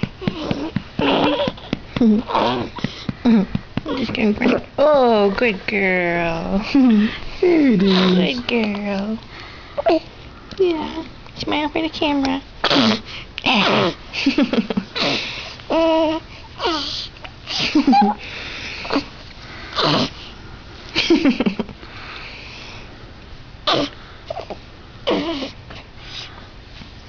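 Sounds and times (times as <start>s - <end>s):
baby squealing: 1.0s - 1.7s.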